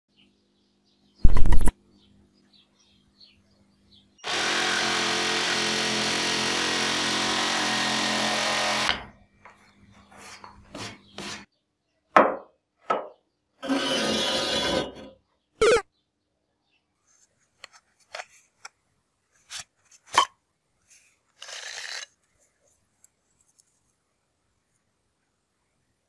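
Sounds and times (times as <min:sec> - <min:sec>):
electric jigsaw sawing wood: 0:04.2 - 0:09.1, 0:13.6 - 0:15.0.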